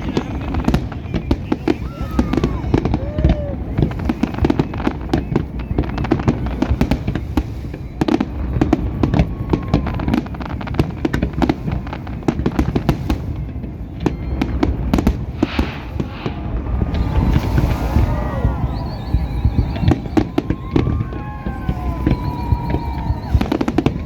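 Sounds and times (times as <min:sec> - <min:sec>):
fireworks bangs and crackles: 0:00.0 - 0:24.0
steady low rumble: 0:15.2 - 0:20.7.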